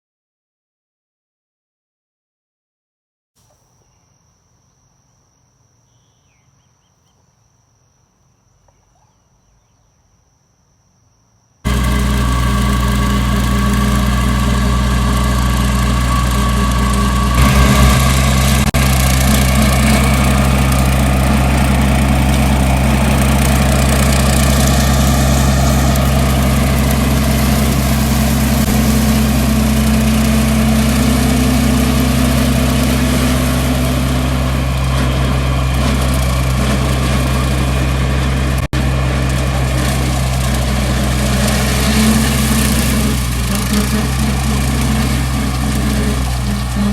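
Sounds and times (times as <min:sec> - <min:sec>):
engine running steadily: 0:11.7 - 0:46.9.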